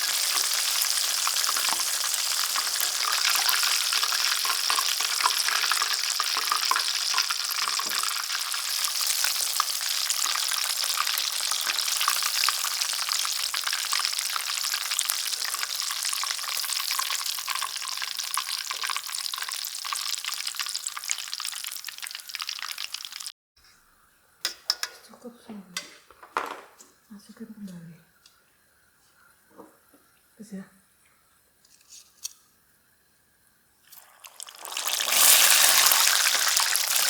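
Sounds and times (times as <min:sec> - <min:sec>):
food deep-frying in oil: 0:00.0 - 0:25.2, 0:33.8 - 0:37.0.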